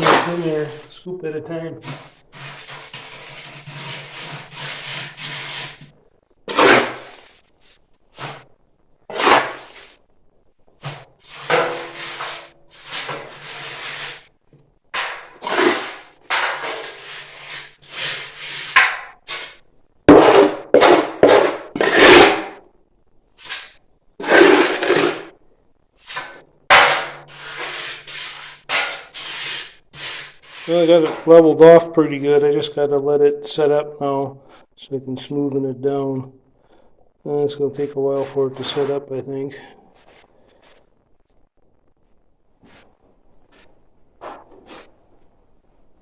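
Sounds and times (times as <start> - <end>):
wet mix scraping and rubbing: 0.0 - 0.9, 1.8 - 7.5, 10.9 - 14.3, 15.0 - 22.6, 23.4 - 25.4, 26.0 - 31.5, 42.7 - 45.0.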